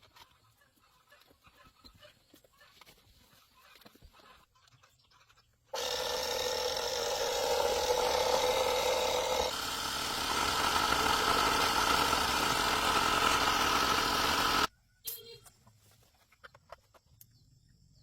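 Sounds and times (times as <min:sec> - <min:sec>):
motor running: 0:05.7 - 0:14.7.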